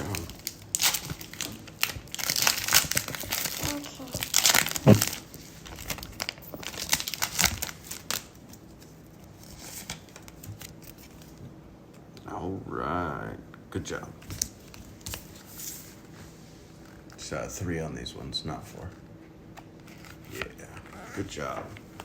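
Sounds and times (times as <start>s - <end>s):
foil wrapper crinkling and tearing: 0.0s - 11.2s.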